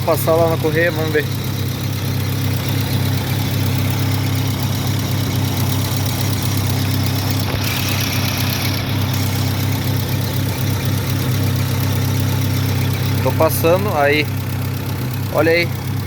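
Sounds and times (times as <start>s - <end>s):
car engine idling: 0.0s - 16.0s
noisy accessory belt running: 0.0s - 16.0s.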